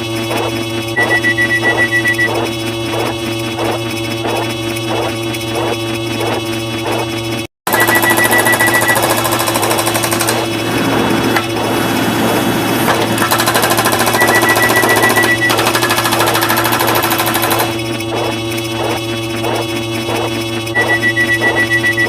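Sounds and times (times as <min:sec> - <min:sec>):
high beep: 0:01.0 - 0:02.5, 0:07.7 - 0:09.1, 0:14.1 - 0:15.6, 0:20.8 - 0:22.0
steady electronic tones: 0:01.0 - 0:06.4, 0:18.1 - 0:22.0
fast even ticking: 0:07.7 - 0:10.5, 0:13.2 - 0:22.0.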